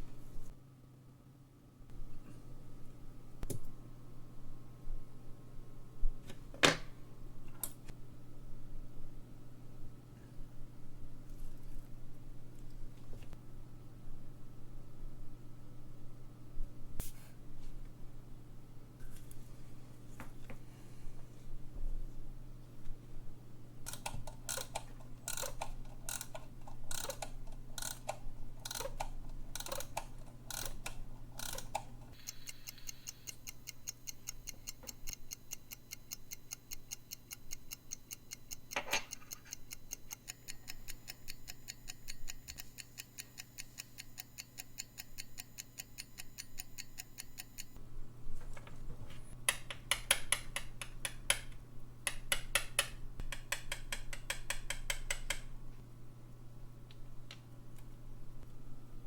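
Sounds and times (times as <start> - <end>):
clock ticking: 23.9 - 47.8.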